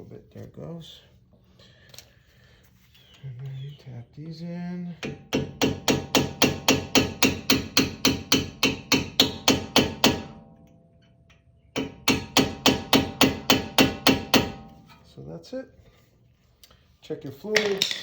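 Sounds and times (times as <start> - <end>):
hammer tapping metal: 5.0 - 10.8, 11.8 - 14.7.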